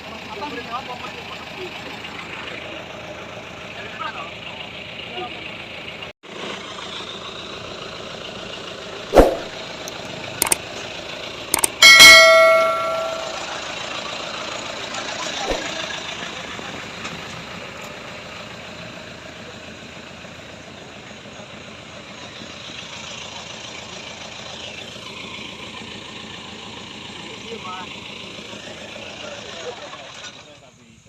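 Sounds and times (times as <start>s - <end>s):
truck engine running: 0.0s - 30.2s
metal clang: 11.6s - 13.5s.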